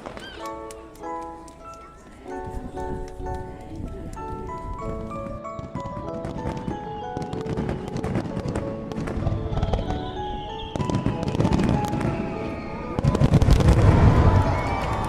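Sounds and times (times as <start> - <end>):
fireworks crackling and popping: 0.0 - 1.7, 3.2 - 15.0
music playing: 0.0 - 15.0
heavy firework bursts: 5.6 - 15.0
falling firework whistle: 5.7 - 15.0.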